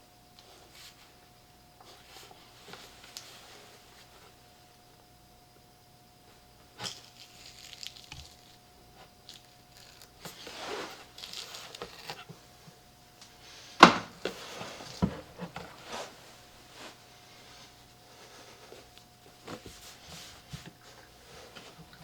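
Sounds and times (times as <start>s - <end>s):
rubbing or scraping: 9.8s - 12.2s.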